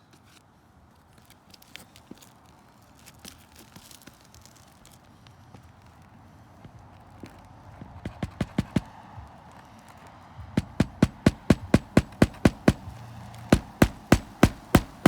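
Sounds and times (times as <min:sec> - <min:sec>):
hammer driving nails: 0:08.1 - 0:08.9, 0:10.6 - 0:15.0.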